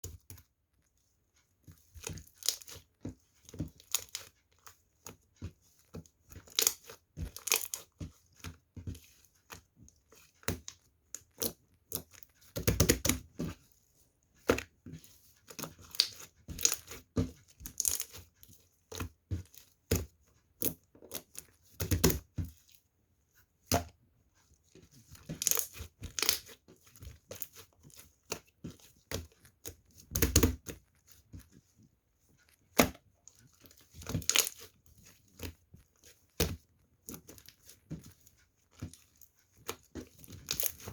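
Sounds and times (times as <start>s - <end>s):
slime squished by hand: 25.2s - 31.2s, 32.7s - 37.8s.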